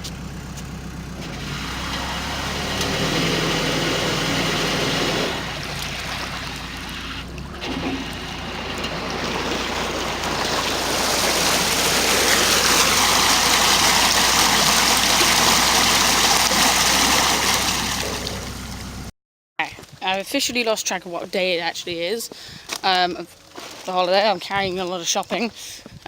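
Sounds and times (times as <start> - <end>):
rushing gurgling water: 1.4 - 19.1.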